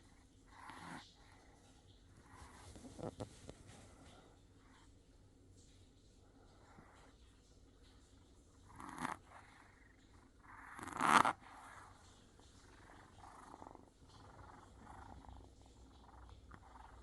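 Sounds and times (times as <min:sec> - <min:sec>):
kitten purring: 0:00.0 - 0:04.9, 0:08.4 - 0:17.0.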